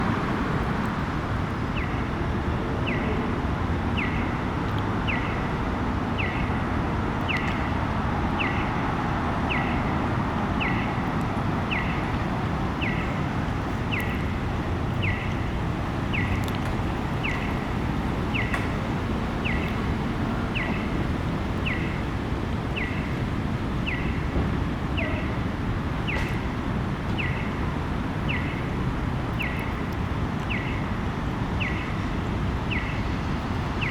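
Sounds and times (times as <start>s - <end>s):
crosswalk signal chirping: 0.0s - 33.9s
traffic noise: 0.0s - 33.9s.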